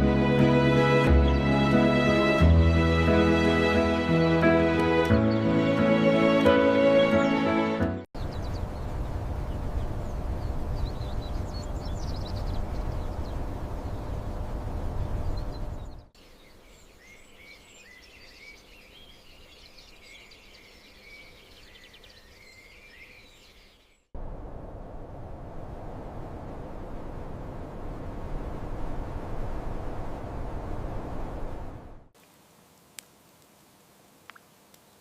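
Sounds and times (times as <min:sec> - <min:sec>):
birds chirping: 0:01.0 - 0:02.1, 0:07.0 - 0:24.1
low rushing noise: 0:24.2 - 0:32.1
quiet hiss: 0:24.2 - 0:35.0.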